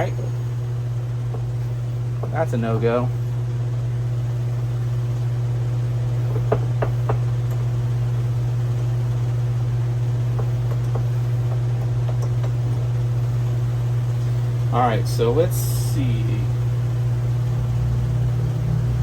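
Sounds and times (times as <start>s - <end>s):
low hum: 0.0s - 19.0s.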